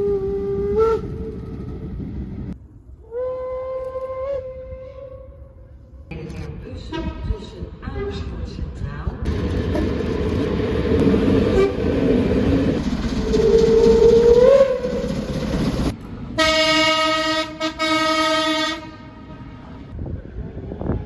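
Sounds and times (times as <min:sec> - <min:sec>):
train rumbling: 0:00.0 - 0:21.0
train horn blast: 0:11.5 - 0:11.9, 0:16.4 - 0:19.6.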